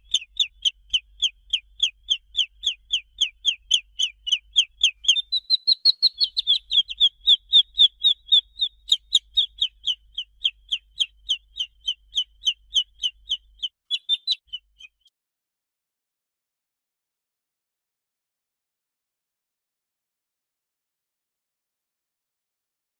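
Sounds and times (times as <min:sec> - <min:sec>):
chick peeping: 0:00.0 - 0:15.1.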